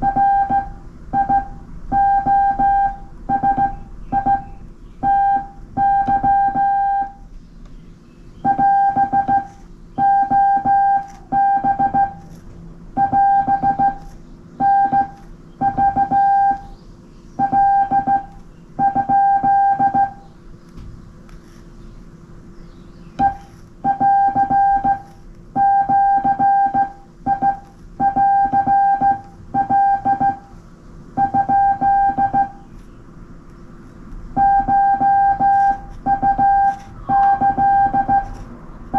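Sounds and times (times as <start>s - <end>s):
morse code beeps: 0.0s - 7.3s, 8.4s - 12.3s, 13.0s - 16.7s, 17.4s - 20.2s, 23.2s - 30.6s, 31.2s - 32.7s, 34.3s - 38.4s.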